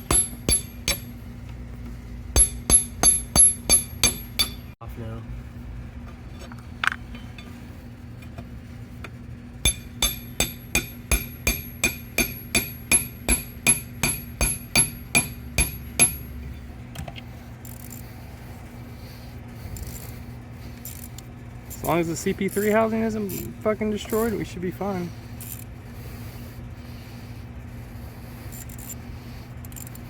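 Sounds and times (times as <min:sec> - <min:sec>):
hammer striking metal: 0:00.0 - 0:01.2, 0:02.4 - 0:04.8, 0:09.6 - 0:16.3.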